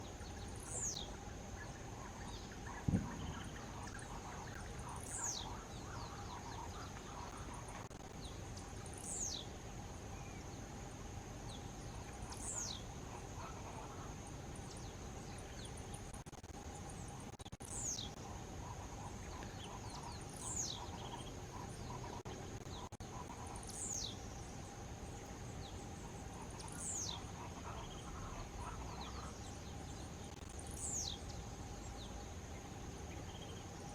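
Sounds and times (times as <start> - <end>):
high insect drone: 0.0 - 33.9
brief thump: 2.9 - 3.2.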